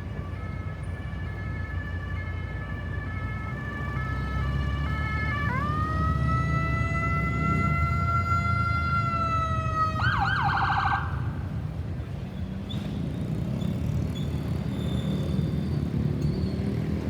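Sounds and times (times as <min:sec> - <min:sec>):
ambulance siren: 0:00.0 - 0:11.7
traffic rumble: 0:00.0 - 0:17.0.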